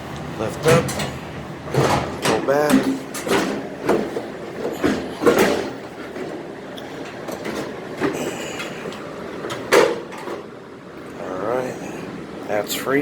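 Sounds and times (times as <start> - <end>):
sheet metal clanking: 0.4 - 6.3.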